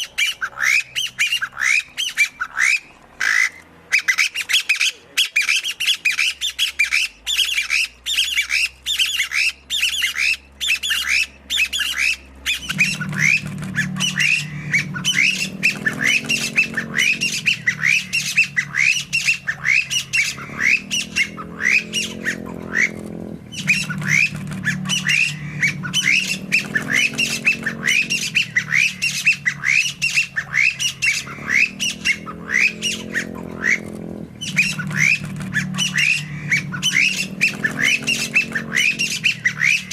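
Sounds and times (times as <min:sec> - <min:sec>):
bird calling sharp falling notes: 0:00.0 - 0:39.9
low hum: 0:10.9 - 0:39.9.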